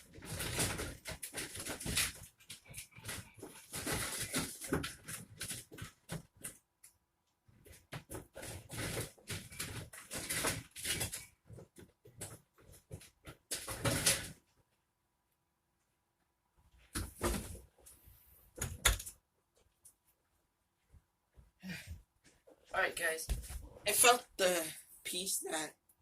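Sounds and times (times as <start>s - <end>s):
objects rustling and clattering: 0.0s - 14.8s, 16.7s - 20.2s.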